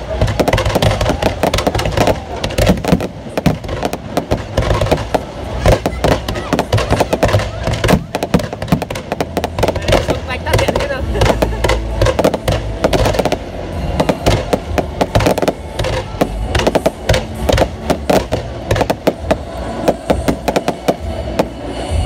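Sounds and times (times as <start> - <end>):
fireworks bangs and cracks: 0.0 - 22.0.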